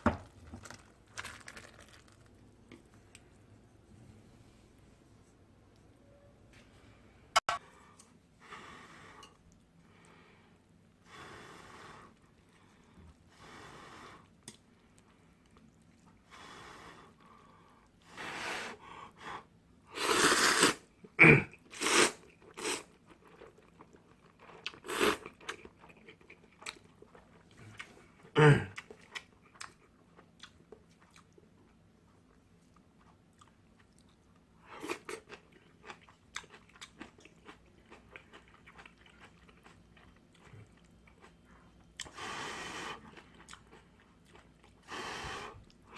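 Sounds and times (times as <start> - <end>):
person chewing and slurping noodles: 21.7 - 31.4, 34.7 - 45.9.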